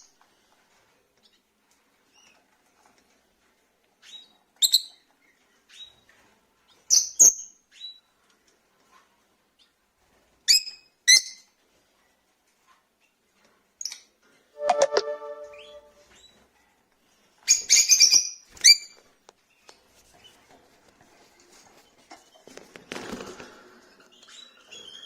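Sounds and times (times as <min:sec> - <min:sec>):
brief steady tones: 0:14.6 - 0:16.0
lovebirds chirping: 0:14.7 - 0:16.0.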